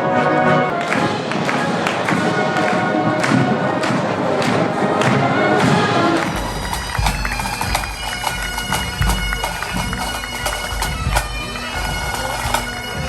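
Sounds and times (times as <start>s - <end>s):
bagpipes playing a tune: 5.8s - 13.0s
sharp drum beats: 6.2s - 13.0s.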